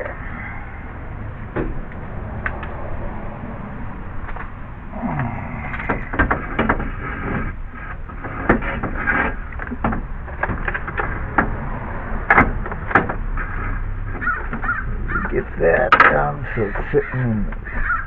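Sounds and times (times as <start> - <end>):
radiator knocking and scraping: 4.2 - 18.0.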